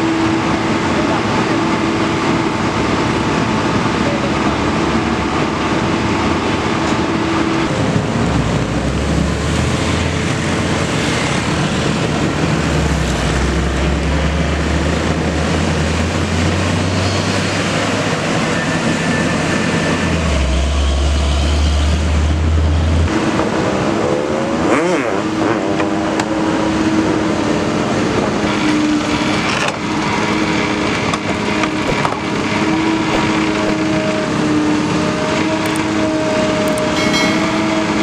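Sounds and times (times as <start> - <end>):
excavator diesel engine: 0.0 - 24.4, 26.8 - 38.0
steady higher tone: 36.8 - 38.0.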